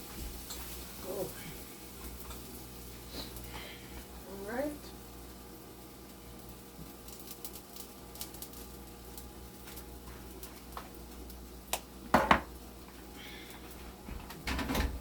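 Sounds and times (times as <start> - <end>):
faint steady hum: 0.0 - 15.0
utensil clanking on frying pan: 11.7 - 12.5.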